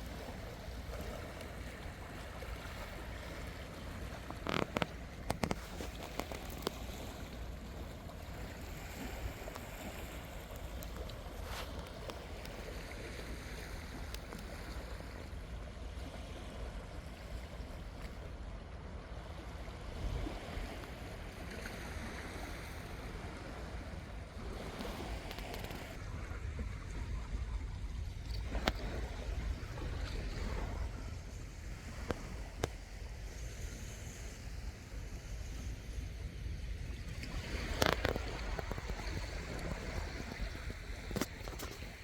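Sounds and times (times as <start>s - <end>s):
water noise: 0.0s - 42.0s
wind rumbling on microphone: 0.0s - 42.0s.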